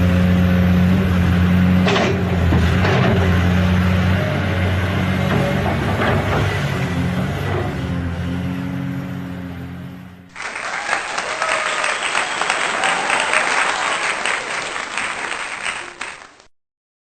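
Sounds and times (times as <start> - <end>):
applause: 10.3 - 16.5.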